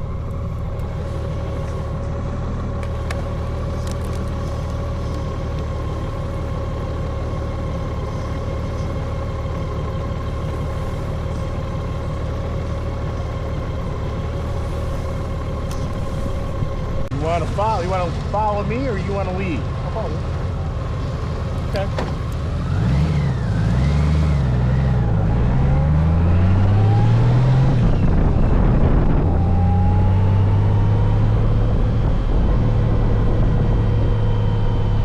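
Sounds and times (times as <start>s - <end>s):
motorcycle engine running: 0.0s - 25.4s.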